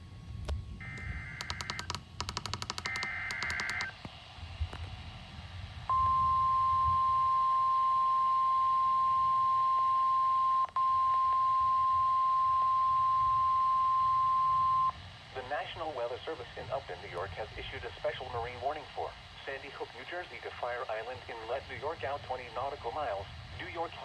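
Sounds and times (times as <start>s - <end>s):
steady warning alarm tone: 0.8s - 4.0s.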